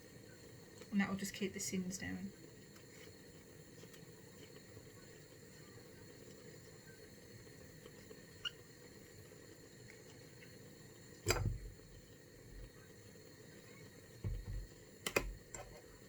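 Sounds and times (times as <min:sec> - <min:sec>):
low steady hum: 0:08.8 - 0:16.0
knock with dull thud: 0:14.2 - 0:14.7.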